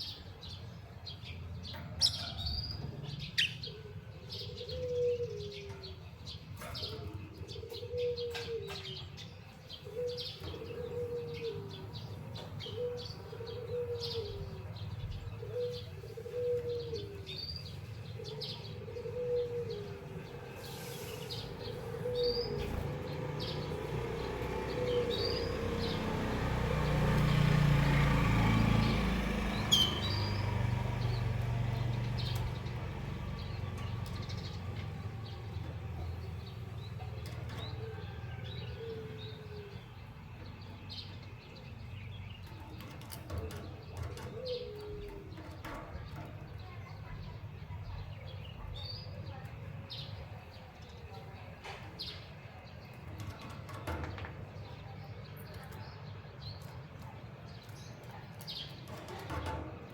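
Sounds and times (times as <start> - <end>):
low falling cooing call: 3.7 - 6.0, 9.8 - 12.0, 12.7 - 14.8, 15.4 - 17.4, 18.2 - 20.3, 36.2 - 40.1
finches chirping: 29.5 - 31.2.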